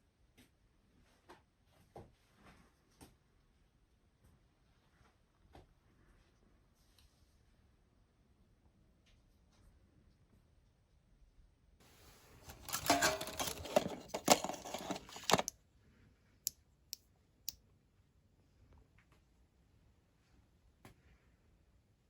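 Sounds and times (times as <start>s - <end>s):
rustling and clattering: 12.0s - 15.5s.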